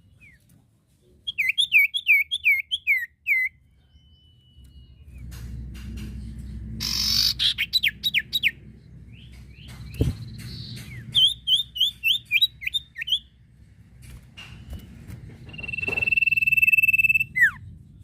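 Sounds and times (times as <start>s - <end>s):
steady low rumble: 4.6s - 18.0s
bird calling with whistles: 6.8s - 8.6s, 10.0s - 13.3s, 15.5s - 17.6s.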